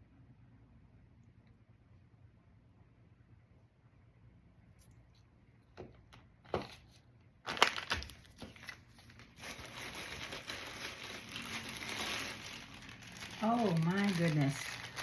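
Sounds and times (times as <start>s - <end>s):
packing wrap crinkling: 7.4s - 15.0s.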